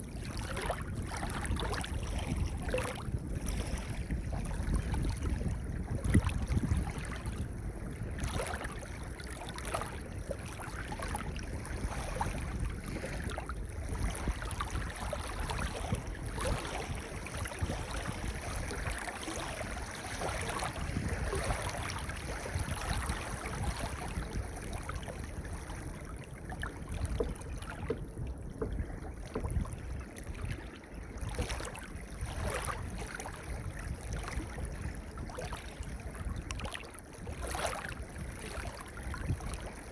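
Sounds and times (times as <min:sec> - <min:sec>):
waves washing over pebbles: 0:08.2 - 0:25.7.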